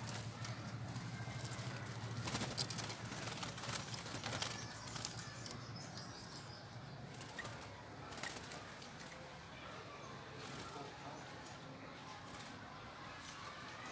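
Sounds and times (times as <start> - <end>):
bird wings flapping: 0.0 - 5.3, 7.1 - 9.2.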